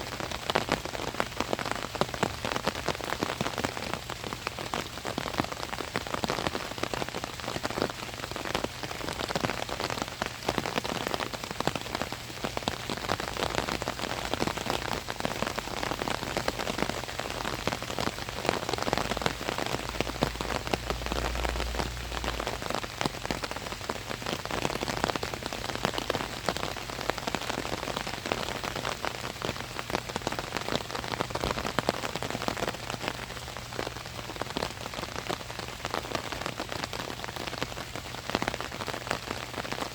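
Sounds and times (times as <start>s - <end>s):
rain pattering on an umbrella: 0.0s - 39.9s
low rumble: 20.0s - 22.8s.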